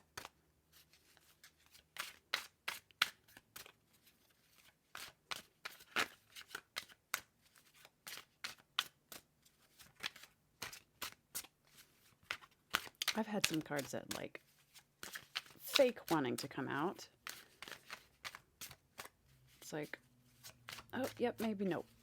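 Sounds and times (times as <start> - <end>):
cards being shuffled: 0.1 - 22.0.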